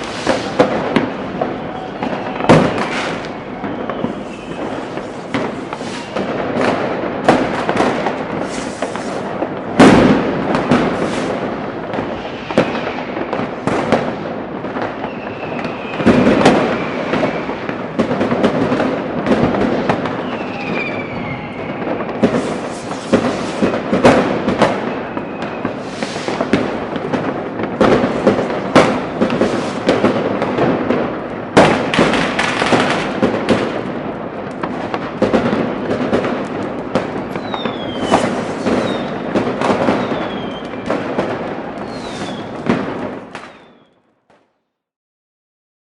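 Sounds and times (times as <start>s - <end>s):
whistling firework tones: 0.0s - 31.0s, 37.0s - 44.2s
big firework booms: 0.0s - 43.8s
crackle of firecrackers: 0.0s - 44.8s.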